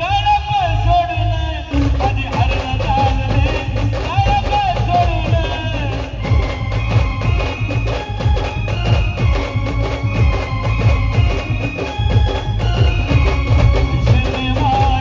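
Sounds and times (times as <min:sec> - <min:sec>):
fast heavy drum beats: 0:01.7 - 0:15.0
pitch-bending melody: 0:04.8 - 0:15.0.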